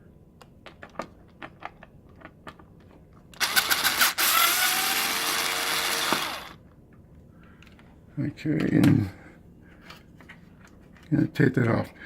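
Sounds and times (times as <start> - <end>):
power drill running: 3.4 - 6.6.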